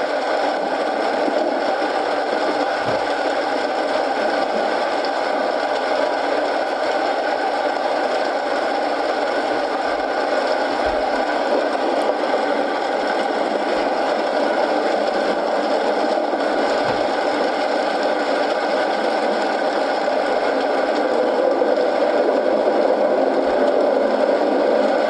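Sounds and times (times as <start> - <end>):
steady rain: 0.0 - 25.0
wood fire crackling: 0.3 - 18.1.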